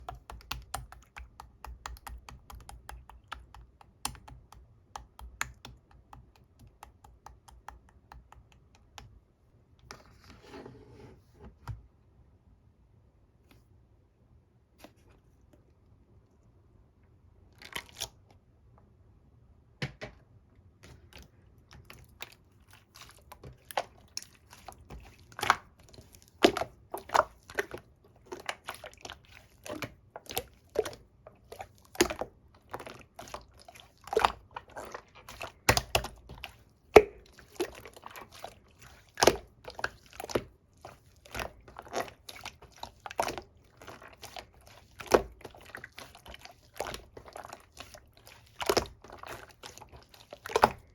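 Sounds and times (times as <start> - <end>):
slime squished by hand: 21.8 - 50.9.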